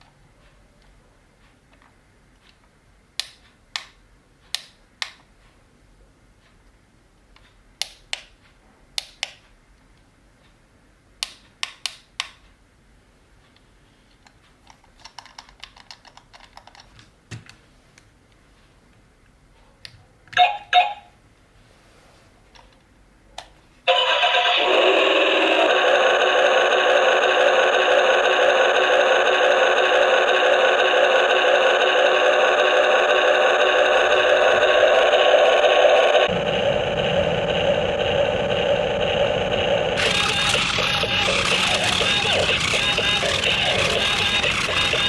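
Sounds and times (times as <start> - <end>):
loud steady whirring: 23.9 - 45.0.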